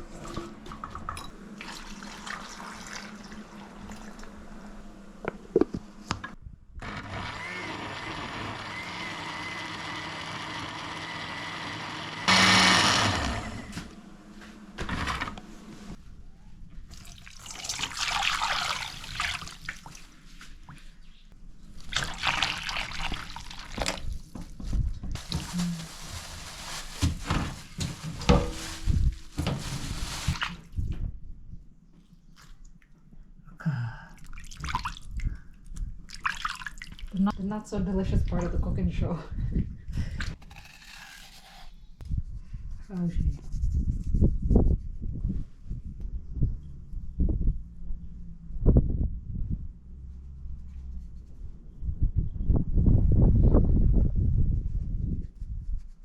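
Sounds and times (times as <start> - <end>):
water splashing in a sink: 0.0 - 4.4, 16.9 - 20.2, 21.7 - 24.4, 34.2 - 35.3, 36.1 - 37.3
knocks of things handled: 27.0 - 29.7.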